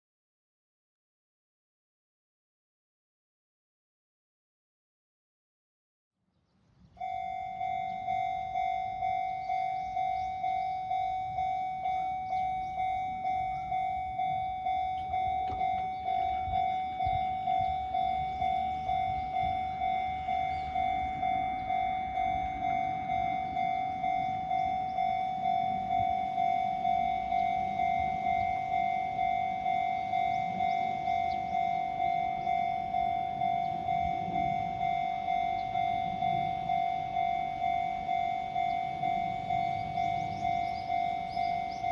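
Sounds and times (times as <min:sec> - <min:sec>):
level crossing alarm bell: 0:06.9 - 0:41.9.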